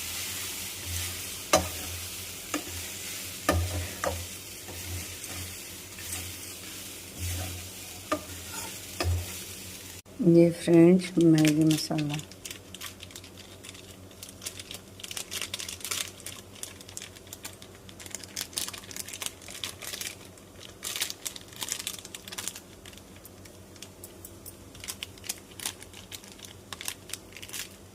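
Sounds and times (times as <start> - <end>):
spoon scraping a pan: 0.8 - 9.4.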